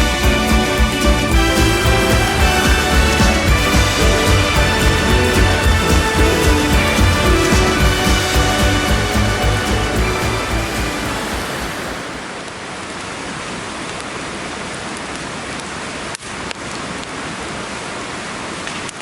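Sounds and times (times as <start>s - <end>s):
background music: 0.0s - 12.2s
fire hissing: 1.7s - 12.3s.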